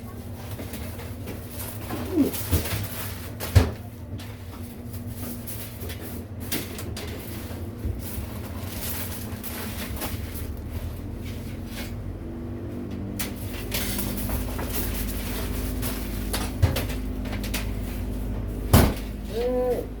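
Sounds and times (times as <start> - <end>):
equipment and trays clattering: 12.8 - 20.0
machinery humming: 13.0 - 20.0.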